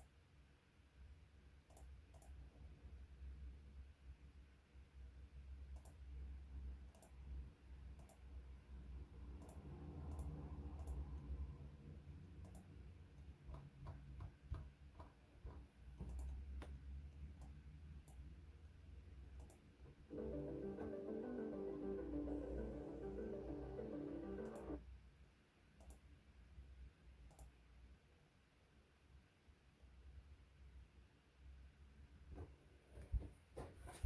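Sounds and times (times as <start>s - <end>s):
low steady hum: 0.0s - 26.0s
faint irregular clicks: 1.6s - 2.7s, 5.7s - 6.2s, 6.8s - 7.3s, 7.9s - 8.4s, 9.3s - 11.4s, 12.4s - 18.3s, 19.3s - 20.0s, 25.8s - 26.2s, 27.2s - 27.6s
music: 20.1s - 24.8s.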